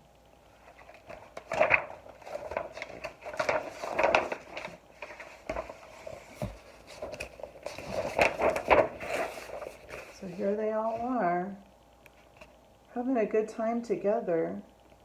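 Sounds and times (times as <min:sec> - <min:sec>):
book pages turning: 0:00.6 - 0:11.2
light knocks and paper rustles: 0:00.8 - 0:11.2.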